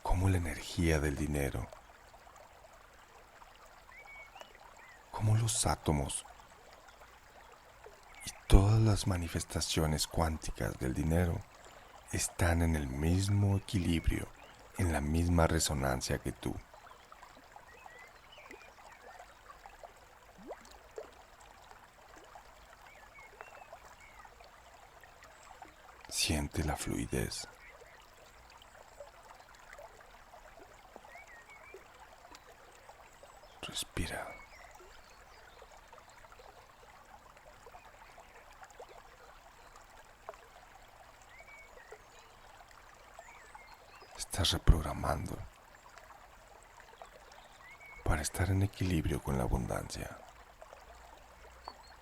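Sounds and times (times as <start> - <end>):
stream trickling and gurgling: 0.0 - 52.0
bird chirp: 3.9 - 5.2, 22.8 - 24.4, 31.0 - 36.6, 41.3 - 42.5, 43.2 - 45.4, 47.0 - 50.0.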